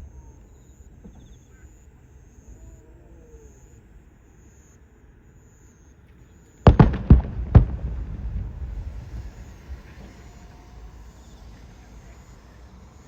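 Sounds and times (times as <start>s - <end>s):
low rumbling echo: 6.7s - 10.3s
firework shells bursting: 6.7s - 10.7s.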